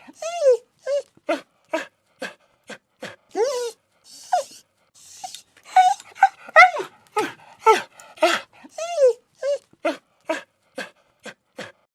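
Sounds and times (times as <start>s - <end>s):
puppy whimpering and whining: 0.0s - 1.1s, 3.4s - 9.7s.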